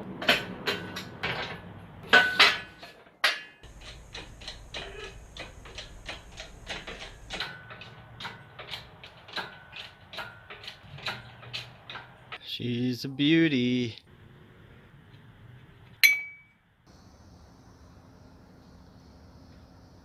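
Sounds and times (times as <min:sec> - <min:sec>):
metal tools clanking on engine parts: 0:00.2 - 0:12.4
rapid even clicks: 0:03.6 - 0:08.0.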